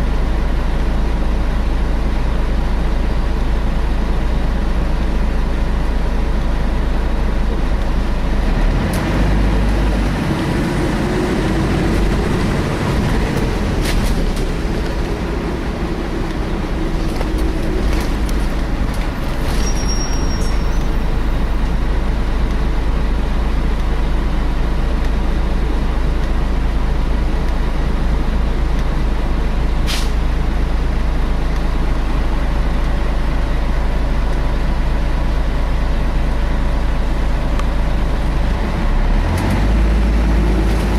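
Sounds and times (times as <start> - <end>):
bus diesel engine drone: 0.0 - 40.9
steady whine: 0.0 - 40.9
brief high squeal: 19.4 - 21.4
short sharp hisses: 29.8 - 30.2.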